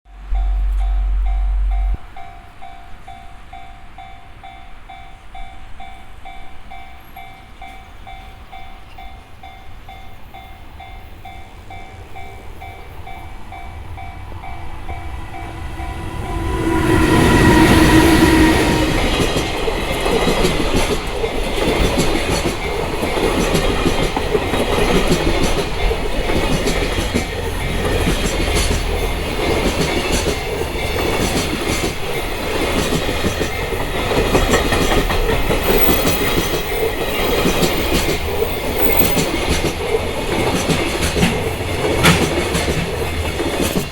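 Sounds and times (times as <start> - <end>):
level crossing warning bell: 0.2 - 39.9
locomotive horn blast: 15.3 - 19.4
train wheels clattering over rail joints: 18.4 - 43.9.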